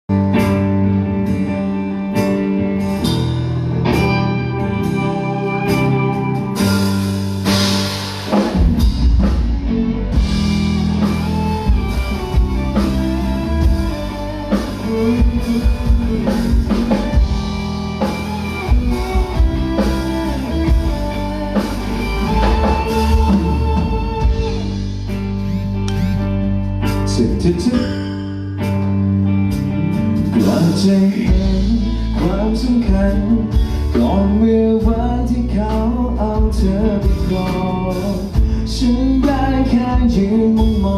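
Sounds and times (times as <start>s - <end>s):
live band with drums and bass: 0.1s - 40.9s
plucked guitar notes: 0.1s - 40.9s.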